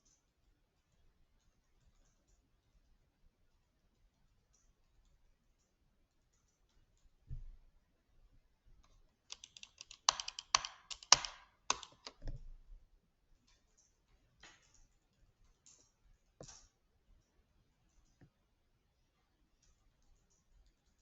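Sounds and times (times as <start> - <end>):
sharp clicks: 8.8 - 12.4.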